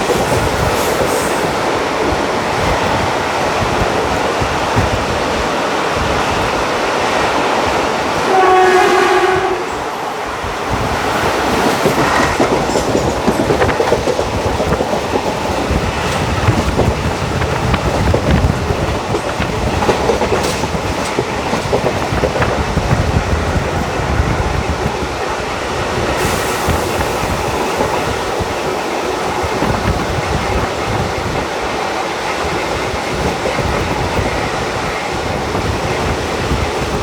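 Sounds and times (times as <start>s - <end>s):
train wheels clattering over rail joints: 0.0s - 9.5s, 10.4s - 37.0s
locomotive horn: 8.2s - 10.0s.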